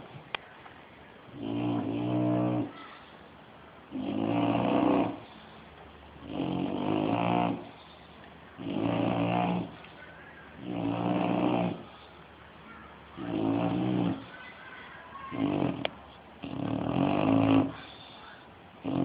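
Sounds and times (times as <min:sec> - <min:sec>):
quiet breaths: 0:00.0 - 0:19.0
dog snoring: 0:01.3 - 0:02.8, 0:03.9 - 0:05.5, 0:06.2 - 0:08.0, 0:08.6 - 0:09.8, 0:10.6 - 0:12.1, 0:13.2 - 0:14.3, 0:15.3 - 0:18.2, 0:18.8 - 0:19.0.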